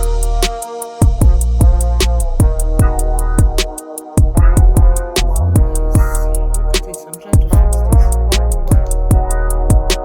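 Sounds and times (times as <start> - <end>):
bass: 0.0 - 10.0
hi-hat ticks: 0.0 - 10.0
kick drums: 0.0 - 10.0.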